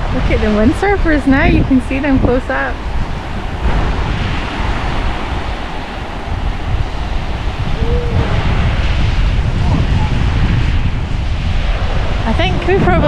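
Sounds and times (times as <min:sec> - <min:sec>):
surf breaking on beach: 0:00.0 - 0:13.0
wind buffeting microphone: 0:00.0 - 0:13.0.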